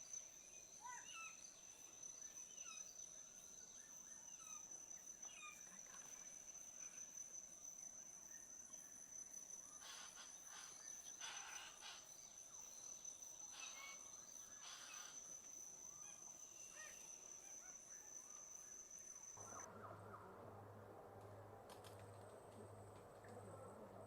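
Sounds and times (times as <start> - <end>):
insect drone: 0.0 - 24.0
low pulsing hum: 19.4 - 24.0.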